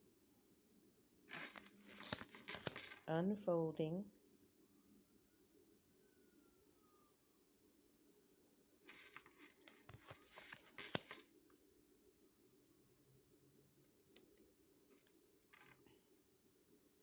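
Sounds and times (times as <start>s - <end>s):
cards rustling and scratching: 1.3s - 3.1s, 8.9s - 11.2s
card clicks: 1.4s - 3.0s, 9.8s - 11.2s.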